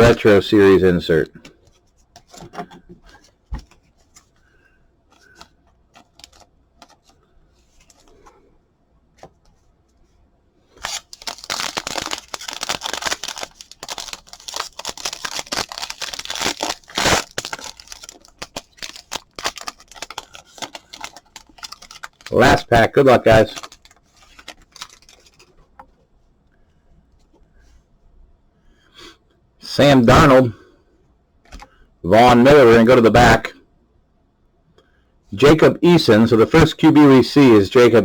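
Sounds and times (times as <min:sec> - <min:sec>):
foil wrapper crinkling and tearing: 0:05.2 - 0:07.1, 0:10.7 - 0:25.6.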